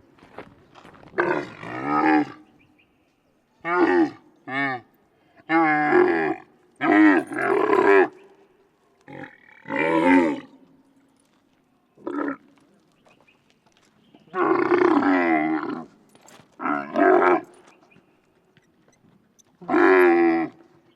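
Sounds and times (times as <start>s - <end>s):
camel grunting: 1.2s - 2.5s, 3.6s - 8.2s, 9.1s - 10.6s, 14.3s - 16.0s, 16.6s - 17.6s, 19.5s - 20.8s.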